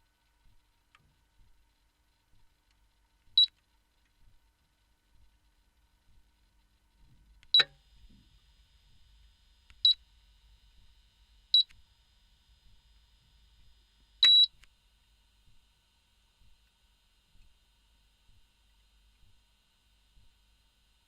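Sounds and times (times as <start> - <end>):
touch control click: 7.4 - 7.8, 14.2 - 14.7
cooktop beeps: 7.6 - 7.8, 14.2 - 14.5.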